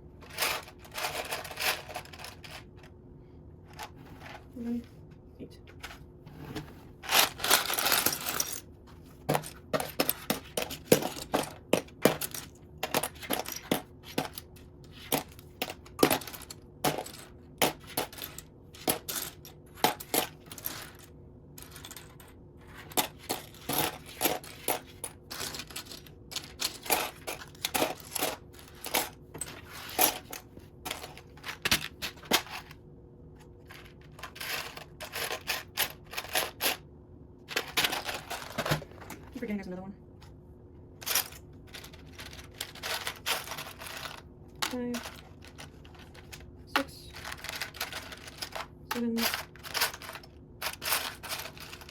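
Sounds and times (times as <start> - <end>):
plastic bricks clattering: 0.2 - 2.9, 7.0 - 32.7, 37.5 - 39.1, 41.0 - 51.9.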